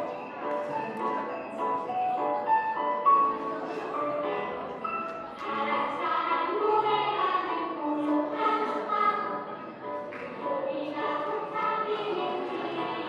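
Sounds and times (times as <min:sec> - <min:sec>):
children singing: 0:05.5 - 0:09.6, 0:10.4 - 0:13.0.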